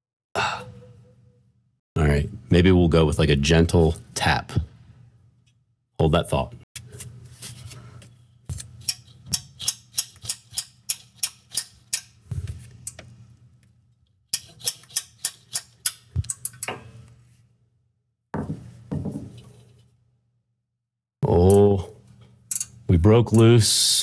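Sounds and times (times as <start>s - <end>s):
soft knocks: 18.4s - 19.5s.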